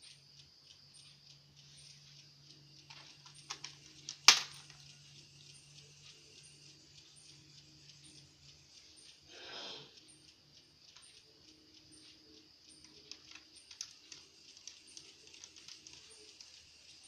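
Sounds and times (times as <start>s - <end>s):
sharp click: 0.0s - 6.2s
laptop fan humming: 0.0s - 17.0s
light clicks: 0.0s - 17.0s.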